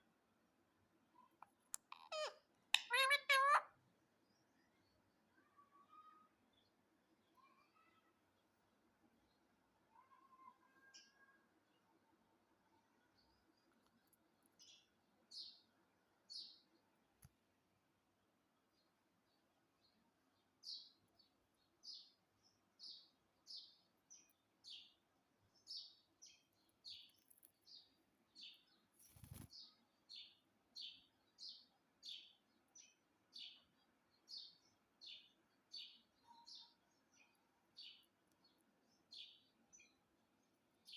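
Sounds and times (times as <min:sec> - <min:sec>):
parrot chirping calls: 0:01.7 - 0:03.7.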